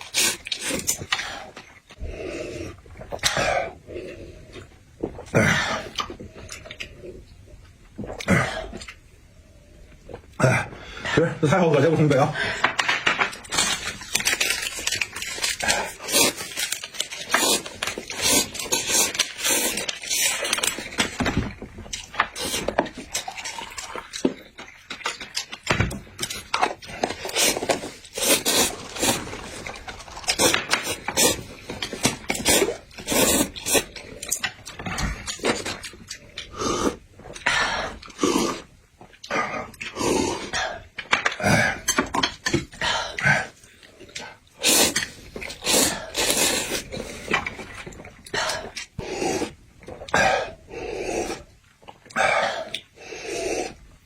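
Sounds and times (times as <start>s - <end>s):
clicking and scraping of handled things: 40.9s - 42.9s.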